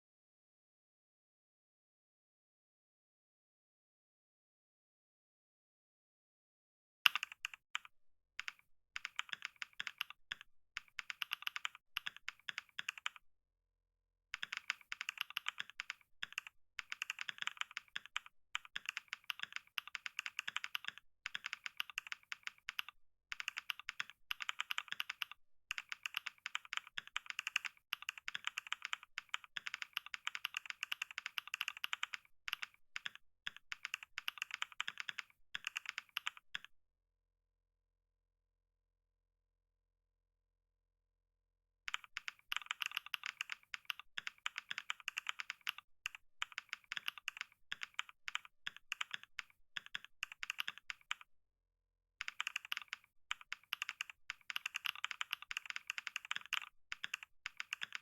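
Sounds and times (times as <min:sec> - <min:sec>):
typing on computer keyboard: 0:07.1 - 0:13.2, 0:14.4 - 0:36.7, 0:41.9 - 0:51.3, 0:52.2 - 0:58.0.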